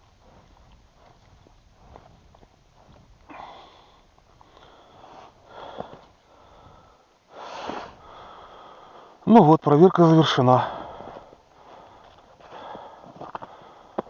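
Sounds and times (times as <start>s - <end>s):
man breathing hard and sniffing: 2.8s - 9.2s, 10.7s - 14.0s.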